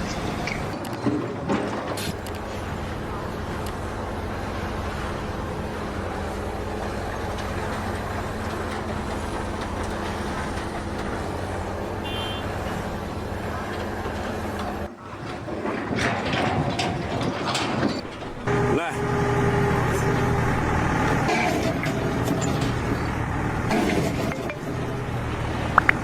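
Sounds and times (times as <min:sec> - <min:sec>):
heavy vehicle engine running: 0:00.0 - 0:26.0
knocks and clatter: 0:00.0 - 0:26.0.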